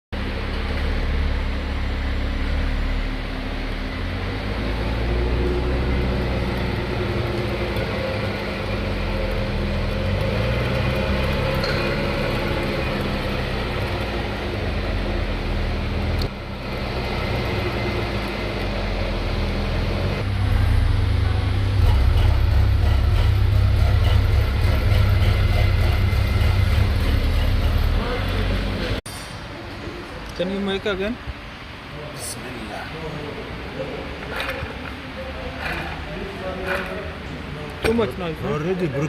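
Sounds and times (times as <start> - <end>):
car differential droning whine: 0.2 - 29.0.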